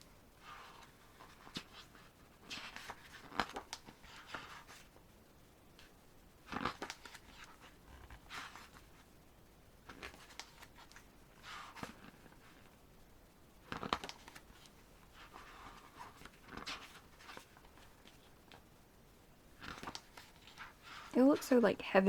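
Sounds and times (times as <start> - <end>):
paper pages rustling: 0.4 - 5.0, 5.8 - 9.1, 9.8 - 12.8, 13.6 - 18.6, 19.6 - 21.2.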